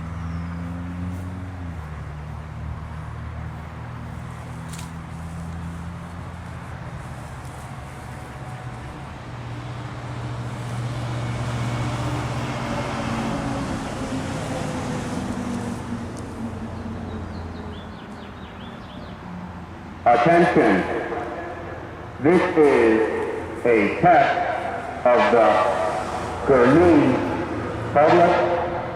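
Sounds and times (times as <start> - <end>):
vehicle passing: 0.0 - 28.9
bird chirps: 16.7 - 19.2.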